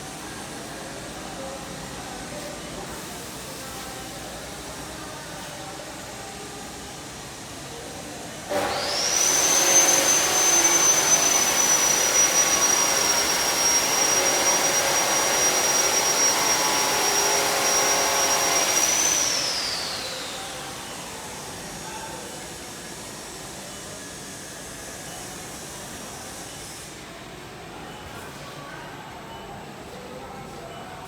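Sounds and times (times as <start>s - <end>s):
electric motor machine whining: 8.5s - 21.8s.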